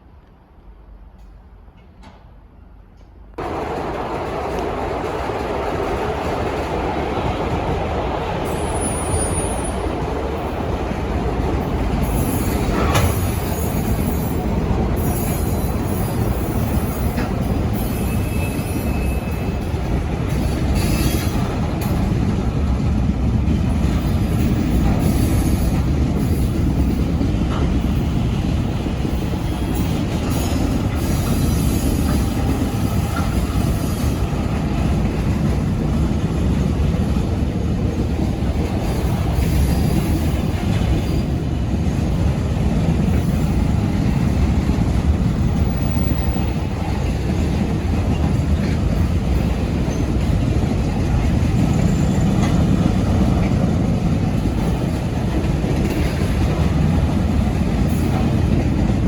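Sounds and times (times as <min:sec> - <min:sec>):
wheel squeal: 0:17.8 - 0:19.6.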